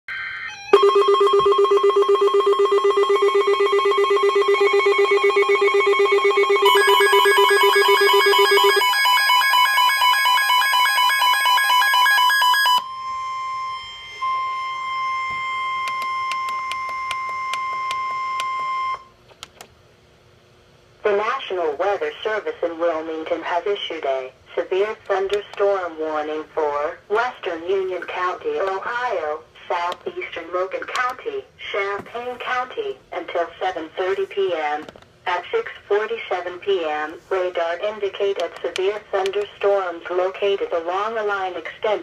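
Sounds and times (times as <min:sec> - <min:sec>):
pulsing electronic alarm tones: 0:00.1 - 0:19.1.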